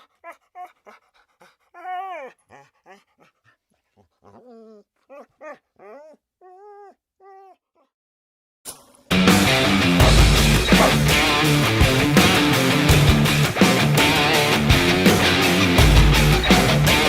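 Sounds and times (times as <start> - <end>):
puppy whimpering and yelping: 1.8 - 2.7, 4.0 - 7.6.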